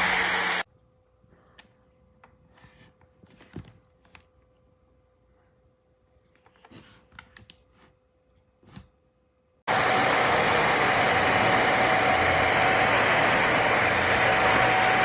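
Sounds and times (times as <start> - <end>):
vacuum motor rushing and whining: 0.0 - 0.6, 9.7 - 15.0.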